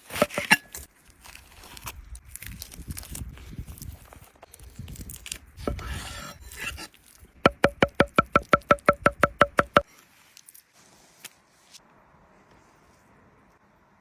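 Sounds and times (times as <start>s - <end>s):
rapid sharp ringing knocks: 7.5s - 9.8s.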